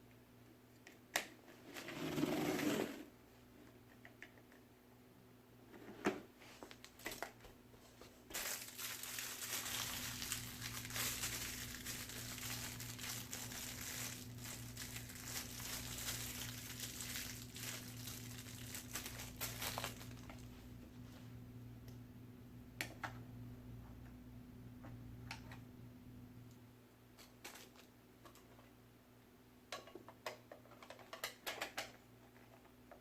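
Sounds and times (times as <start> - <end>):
plastic packaging crinkling: 6.7 - 7.4, 8.3 - 20.6.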